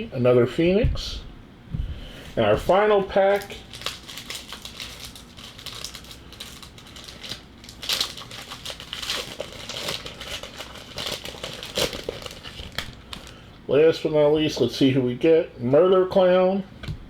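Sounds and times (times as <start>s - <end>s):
wrapper crinkling as torn open: 3.3s - 13.4s.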